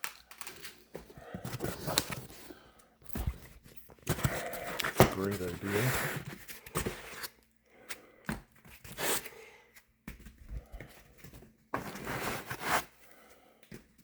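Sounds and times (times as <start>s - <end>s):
foam and cardboard rustling: 0.5s - 7.4s, 10.7s - 13.0s.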